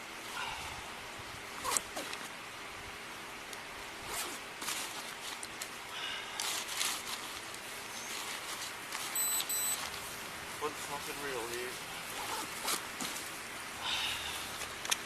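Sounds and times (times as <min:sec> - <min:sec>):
backpack zipper rasping: 0:01.6 - 0:02.3, 0:04.0 - 0:05.2, 0:12.1 - 0:13.2
short high beeps: 0:09.2 - 0:09.8.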